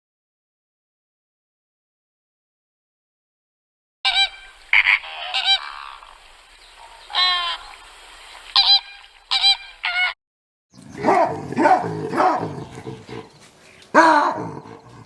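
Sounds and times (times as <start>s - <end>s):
bird honking: 4.1s - 7.8s, 8.5s - 10.2s
deep animal roar: 10.9s - 13.4s, 14.0s - 15.0s.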